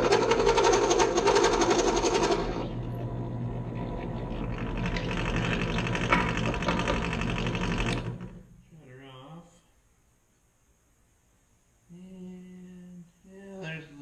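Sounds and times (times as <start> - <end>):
drill press motor hum: 0.0 - 8.5.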